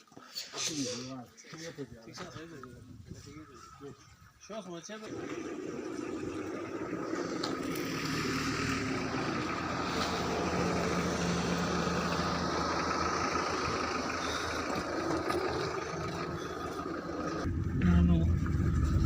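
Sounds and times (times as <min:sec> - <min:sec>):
engine running with whine: 0:05.1 - 0:19.0.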